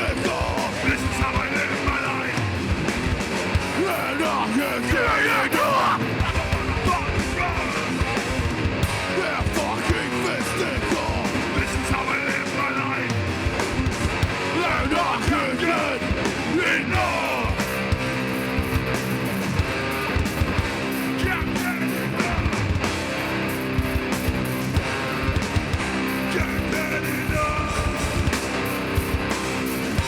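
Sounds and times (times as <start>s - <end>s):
bass: 0.0s - 30.0s
distorted electric guitars: 0.0s - 30.0s
pounding drums: 0.0s - 30.0s
yelled vocals: 0.0s - 30.0s.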